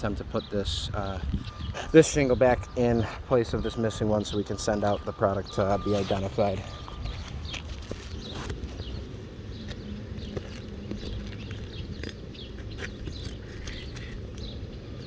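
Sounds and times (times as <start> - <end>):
small birds chirping: 0.0 - 15.0
sharp clicks and scrapes: 10.3 - 14.6.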